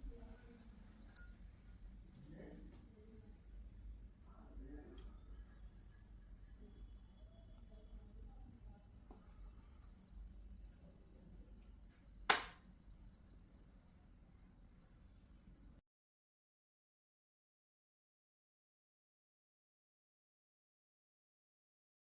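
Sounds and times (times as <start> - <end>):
sharp click: 12.3 - 12.7.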